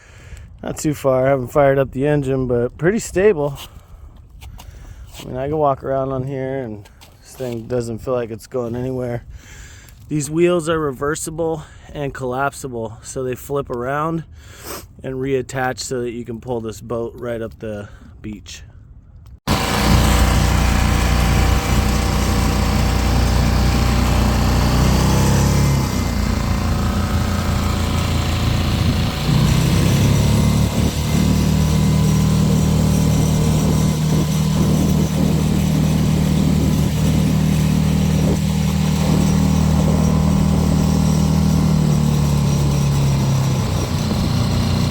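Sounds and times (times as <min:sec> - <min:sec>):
outboard motor running: 0:19.5 - 0:44.9.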